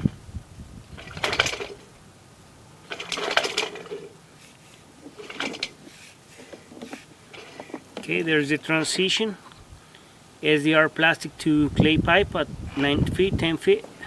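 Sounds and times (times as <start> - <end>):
cable scraping and clattering: 5.0 - 9.0.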